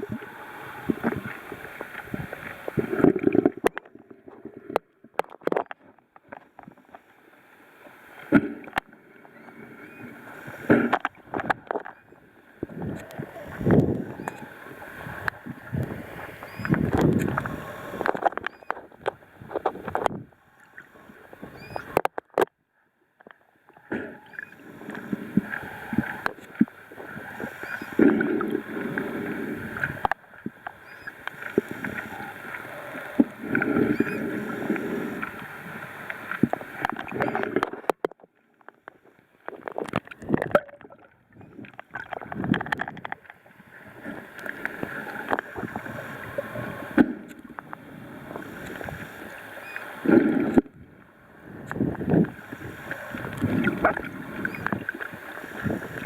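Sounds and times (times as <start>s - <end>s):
water sloshing around kayak: 8.1s - 22.4s, 23.8s - 38.0s, 51.5s - 56.0s.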